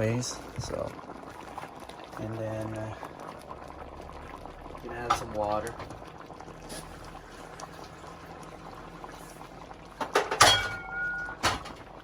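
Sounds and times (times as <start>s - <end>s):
pot boiling: 0.0s - 12.0s
loud metal clanks: 10.2s - 11.8s.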